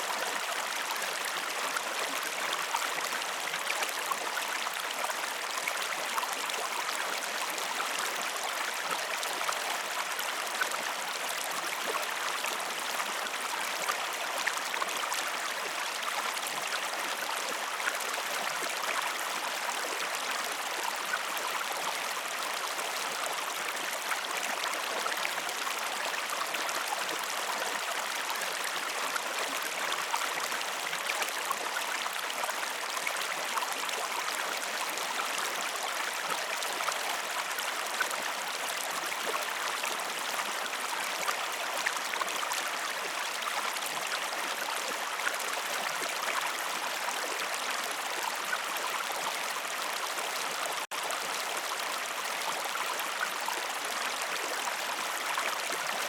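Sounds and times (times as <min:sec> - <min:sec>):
stream water flowing: 0:00.0 - 0:56.0.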